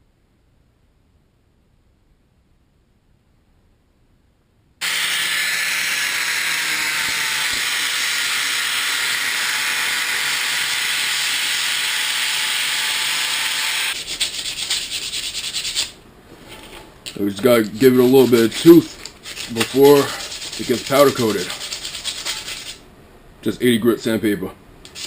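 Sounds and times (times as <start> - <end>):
welding arc sizzling hiss: 17.5 - 22.8.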